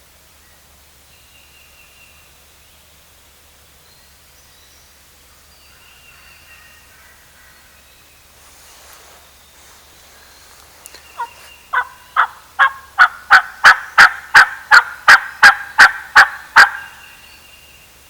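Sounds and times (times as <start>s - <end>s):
songbird calls: 3.8s - 18.0s
turkey gobble: 11.2s - 17.2s.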